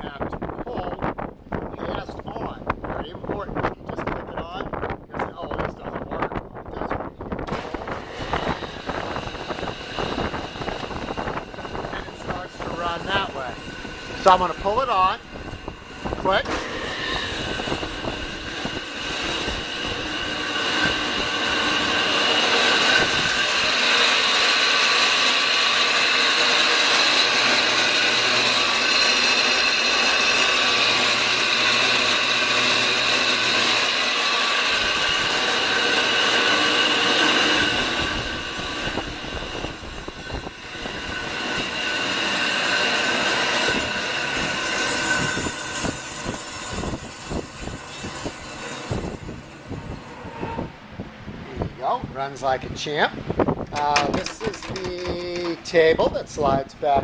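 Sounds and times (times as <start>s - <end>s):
meat slicer whining: 7.4s - 50.6s, 53.7s - 55.8s.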